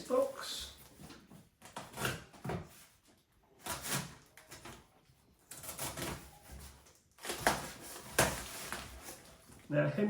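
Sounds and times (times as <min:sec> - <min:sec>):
cardboard scraping and rustling: 0:05.5 - 0:09.6.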